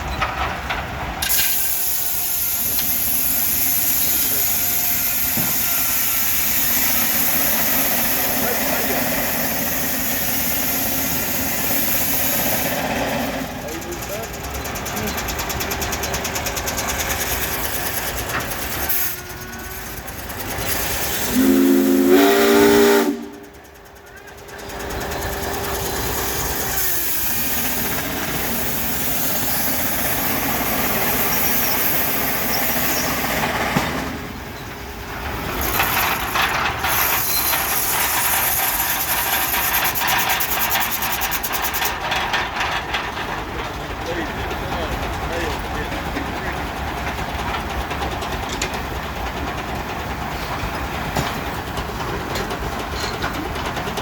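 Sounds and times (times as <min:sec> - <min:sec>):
machinery clattering: 0:00.0 - 0:21.3, 0:23.6 - 0:54.0
steam hissing: 0:01.2 - 0:42.7
steam whistle blast: 0:21.2 - 0:23.4.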